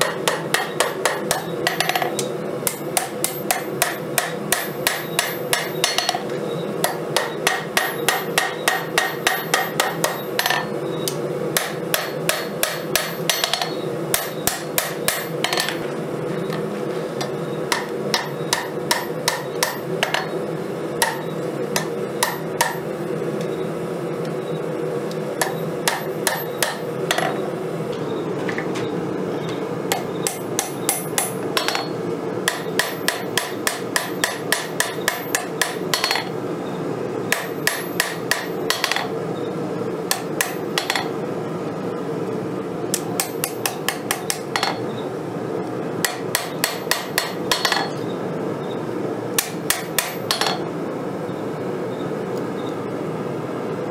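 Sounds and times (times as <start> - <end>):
hammer striking hot steel: 0.0 - 6.2, 6.8 - 15.8, 17.2 - 20.4, 21.0 - 22.8, 25.4 - 27.4, 29.9 - 36.4, 37.3 - 39.1, 40.1 - 41.1, 42.9 - 44.8, 46.0 - 48.0, 49.4 - 50.7.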